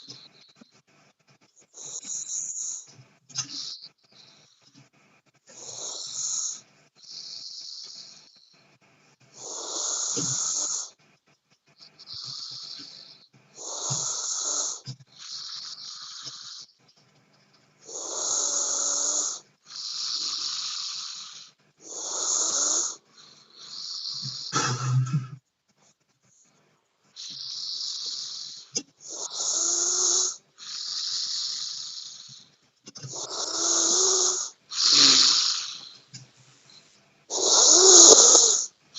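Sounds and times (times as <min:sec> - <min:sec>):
hissing breath: 0:01.7 - 0:04.5, 0:05.5 - 0:08.2, 0:09.4 - 0:11.0, 0:12.1 - 0:16.7, 0:17.9 - 0:24.9, 0:27.2 - 0:36.2, 0:37.3 - 0:38.8
person snoring: 0:05.5 - 0:07.9, 0:09.4 - 0:10.9, 0:12.2 - 0:16.6, 0:17.9 - 0:25.2, 0:27.2 - 0:32.4, 0:33.1 - 0:36.0, 0:37.3 - 0:38.7.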